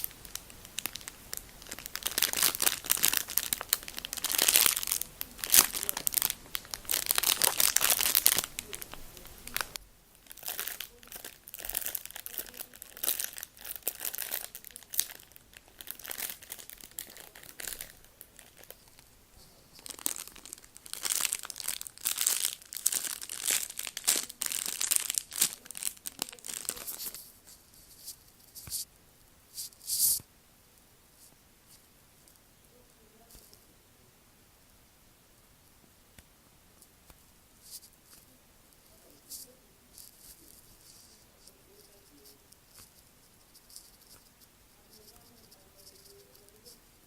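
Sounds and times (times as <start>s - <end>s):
foam toy squeezed crackling: 0.0s - 19.1s, 19.7s - 27.2s.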